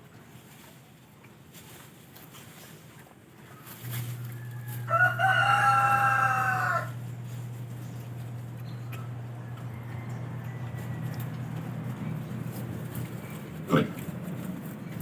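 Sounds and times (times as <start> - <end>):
low steady hum: 2.7 - 15.0
rooster crowing: 4.0 - 7.3, 8.3 - 12.7.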